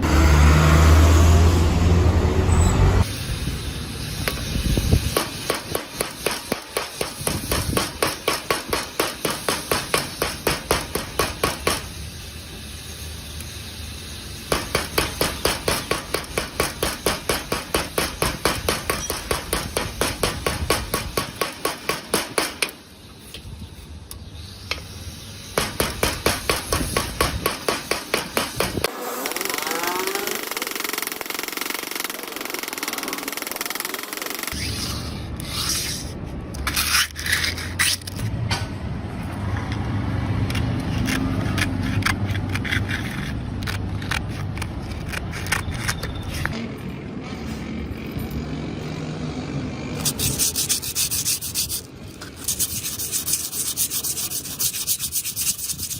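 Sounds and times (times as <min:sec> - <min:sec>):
hammer striking metal: 0:05.1 - 0:11.9, 0:14.5 - 0:22.8.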